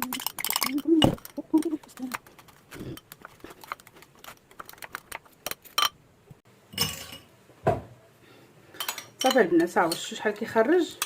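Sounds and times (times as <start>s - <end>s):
kitchen utensils and dishes clinking: 0.0s - 2.2s, 6.7s - 7.3s, 8.7s - 11.0s.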